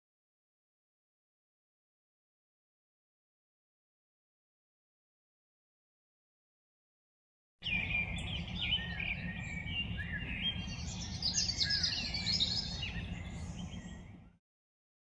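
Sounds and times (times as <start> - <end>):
birds singing and trilling: 7.6 - 14.4
steady low rumble: 7.6 - 14.4.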